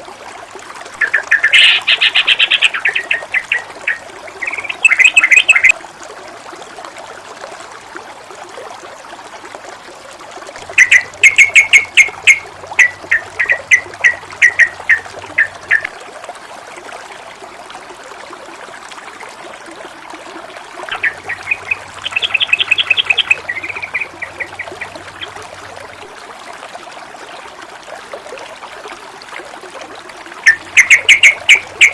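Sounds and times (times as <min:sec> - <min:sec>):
water trickling and splashing: 0:00.0 - 0:31.9
songbird chirping: 0:01.0 - 0:05.8, 0:10.7 - 0:15.9, 0:20.9 - 0:25.4, 0:30.4 - 0:31.9.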